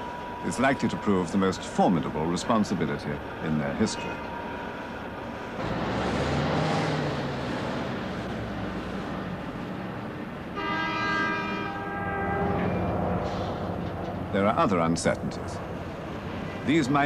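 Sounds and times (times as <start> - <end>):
train rumbling: 0.0 - 17.0
train horn blast: 10.5 - 13.0.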